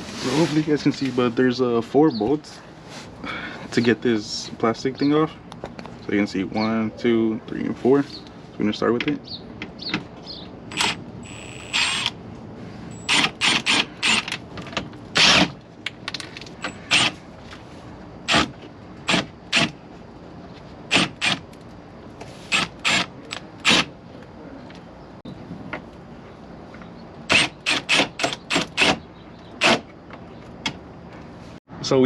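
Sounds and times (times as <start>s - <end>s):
impact gun whining: 10.7s - 12.2s.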